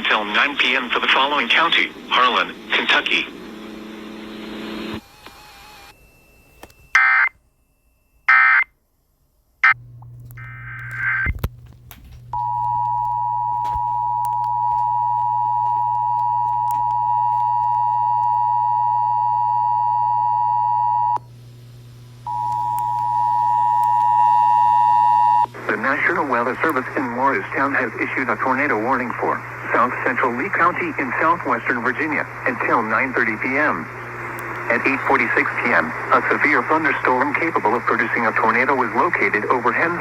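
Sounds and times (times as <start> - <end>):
low steady hum: 8.9 - 40.0.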